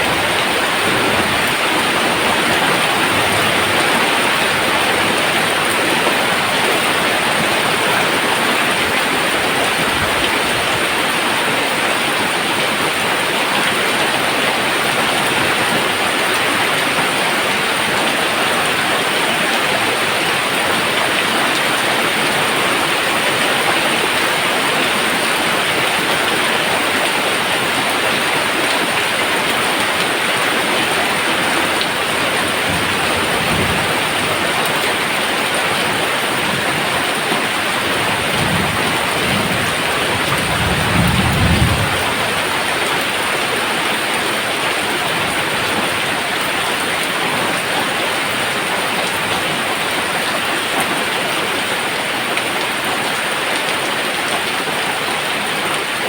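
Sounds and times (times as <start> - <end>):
heavy rain: 0.0 - 56.0
thunder rumbles: 32.1 - 34.3, 37.8 - 43.0.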